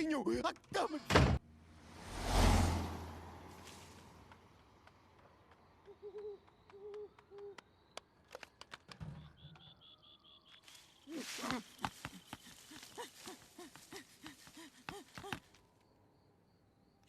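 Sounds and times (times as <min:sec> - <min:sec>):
owl hooting: 0:05.8 - 0:07.6.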